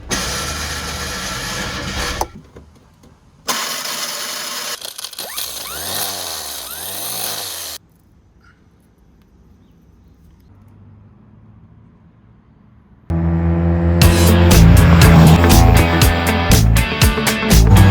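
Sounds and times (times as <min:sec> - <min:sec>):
two-cylinder car engine revving: 0:13.1 - 0:17.9.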